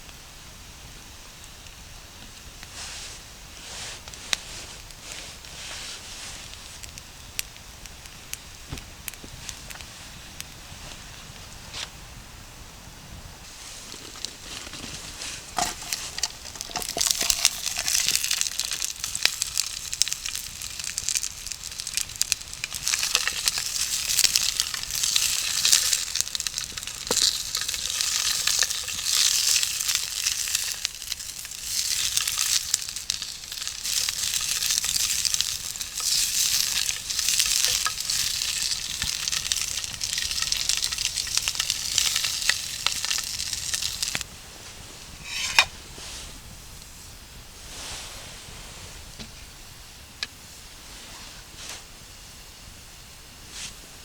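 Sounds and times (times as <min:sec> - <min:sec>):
food sizzling in a pan: 0:13.4 - 0:44.3, 0:45.1 - 0:46.6
sharp pops of frying: 0:15.4 - 0:44.3, 0:45.2 - 0:45.8.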